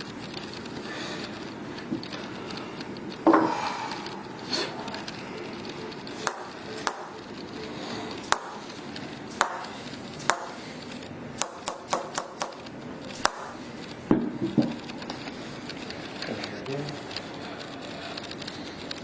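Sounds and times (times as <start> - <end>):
fuller knocks: 8.3 - 8.6, 9.4 - 9.6, 10.3 - 10.6.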